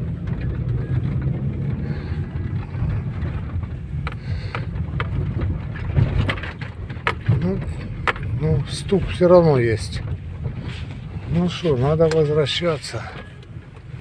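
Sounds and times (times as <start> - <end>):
car cabin rumble: 0.0 - 14.0
suspension knocks: 2.3 - 10.6.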